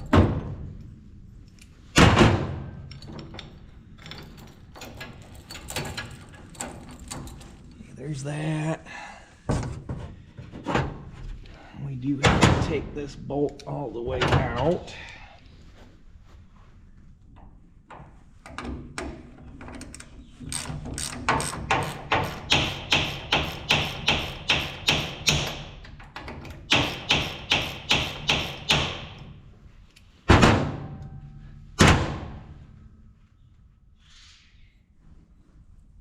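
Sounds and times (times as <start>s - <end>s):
hammer striking steel: 22.2s - 25.7s.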